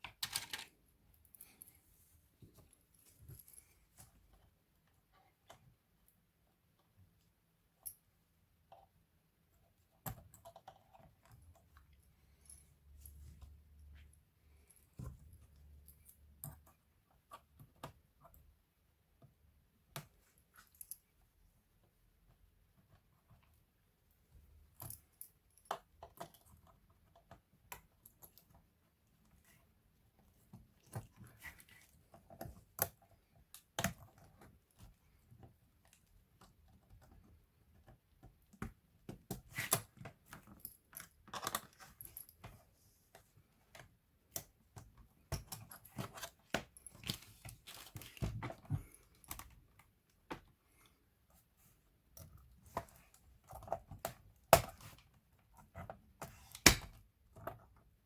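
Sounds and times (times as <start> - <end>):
laptop parts clicking and clattering: 0.0 - 1.8, 24.6 - 29.4, 30.1 - 50.6.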